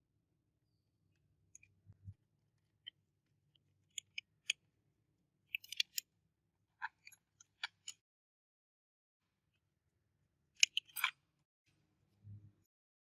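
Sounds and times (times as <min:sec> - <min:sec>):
small plastic clicks and snaps: 0:03.9 - 0:04.6, 0:05.5 - 0:06.1, 0:10.6 - 0:11.2.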